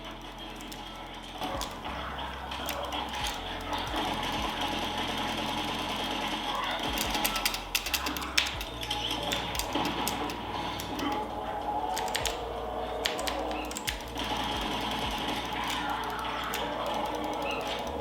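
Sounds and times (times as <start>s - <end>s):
mechanical keyboard key clicks: 11.9s - 18.0s.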